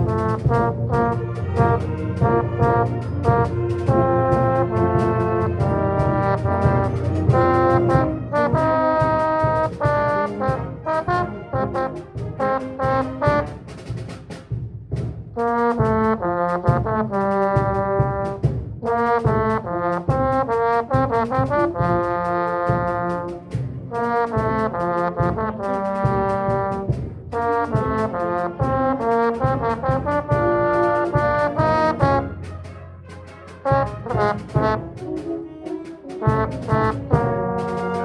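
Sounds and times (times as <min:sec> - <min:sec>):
trombone playing a fanfare: 0:00.0 - 0:14.2, 0:15.4 - 0:38.0.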